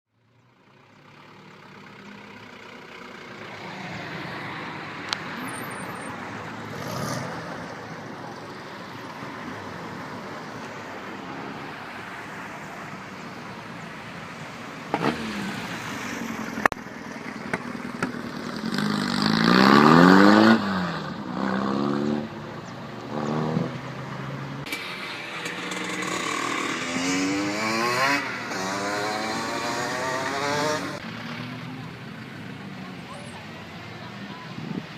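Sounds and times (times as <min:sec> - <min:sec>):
cars driving past: 0:00.2 - 0:34.9
car accelerating: 0:18.2 - 0:33.0.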